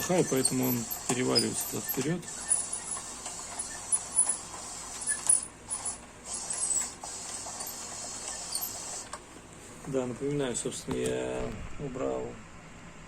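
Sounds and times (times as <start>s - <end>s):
robot tracks squeaking: 0.0s - 9.1s.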